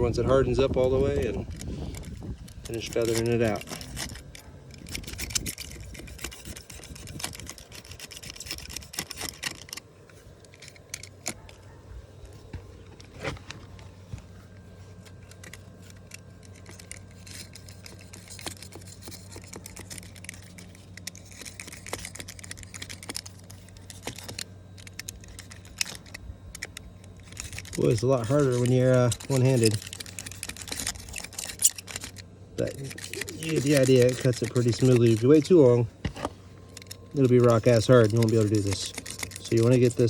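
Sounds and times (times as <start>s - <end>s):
low steady hum: 0.0s - 40.0s
razor blade slicing fiberglass: 1.2s - 9.8s, 15.3s - 24.4s, 27.2s - 35.7s.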